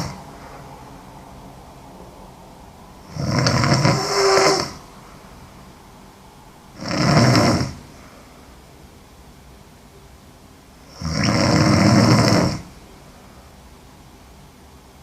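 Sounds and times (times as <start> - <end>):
woman snoring: 0.0 - 0.3, 3.0 - 4.8, 6.8 - 8.0, 10.9 - 12.7
quiet breathing: 0.0 - 1.7, 3.0 - 5.6, 6.8 - 8.7.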